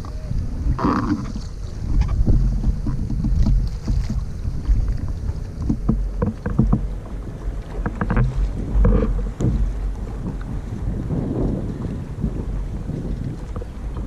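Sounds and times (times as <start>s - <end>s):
wind buffeting microphone: 0.0s - 14.0s
short knocks: 7.7s - 9.9s.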